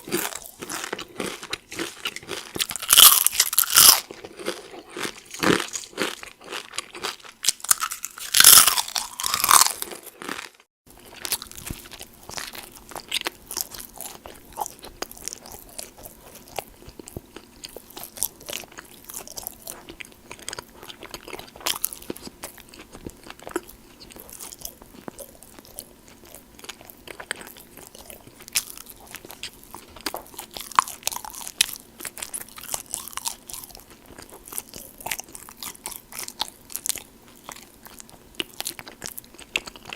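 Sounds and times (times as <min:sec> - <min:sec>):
crunching tortilla chips: 0:00.0 - 0:39.9
soft chewing with wet mouth clicks: 0:11.4 - 0:39.9.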